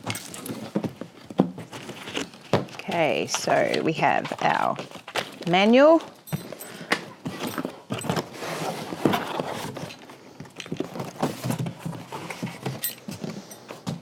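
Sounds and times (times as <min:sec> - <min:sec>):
parts and cardboard knocking: 0:00.0 - 0:03.4
packaging rustling and crinkling: 0:00.0 - 0:14.0.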